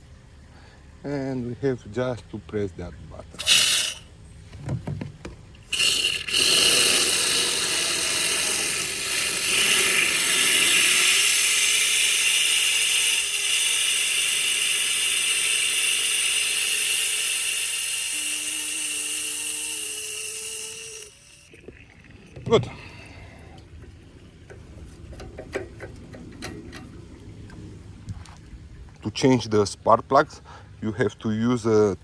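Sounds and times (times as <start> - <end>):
aerosol spray hiss: 3.4 - 4.1, 5.7 - 21.5.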